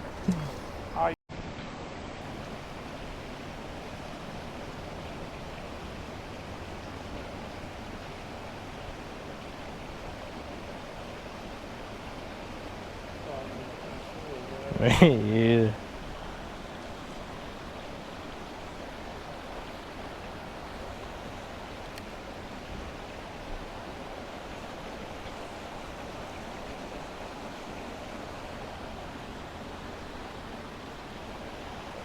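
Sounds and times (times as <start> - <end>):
creek water flowing: 0.0 - 32.0
faint ticks: 21.8 - 22.2.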